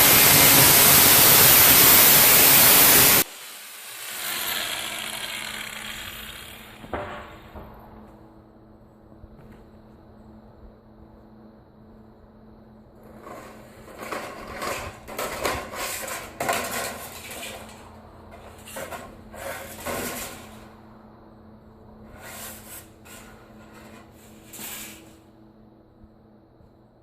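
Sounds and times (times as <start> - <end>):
metal gutter being cut: 0.0 - 7.0, 13.0 - 20.7.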